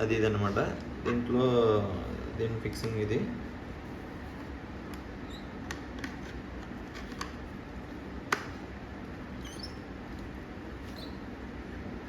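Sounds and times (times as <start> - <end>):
plastic helmet parts clicking: 5.6 - 7.4
high squeaks: 9.4 - 9.9, 10.8 - 11.3.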